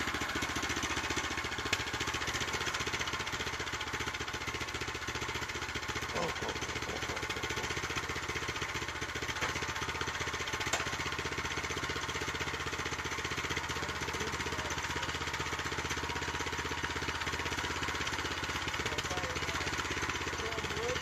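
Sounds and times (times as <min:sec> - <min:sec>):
small gasoline engine running: 0:00.0 - 0:21.0.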